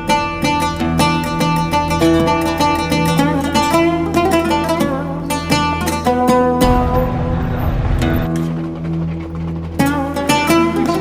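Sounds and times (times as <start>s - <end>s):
plucked string instrument: 0.0s - 11.0s
low drone: 0.1s - 11.0s.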